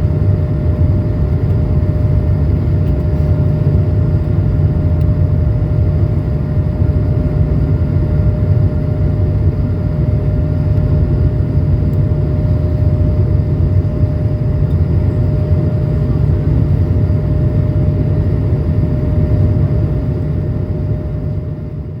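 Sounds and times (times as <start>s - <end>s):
airplane cabin engine roar: 0.0s - 22.0s.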